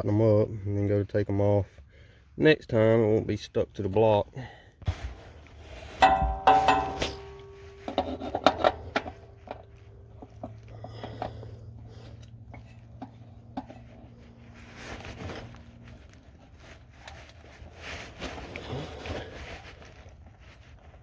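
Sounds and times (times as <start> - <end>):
ringing metal clank: 5.9 - 10.3
metal tools clinking: 5.9 - 13.2.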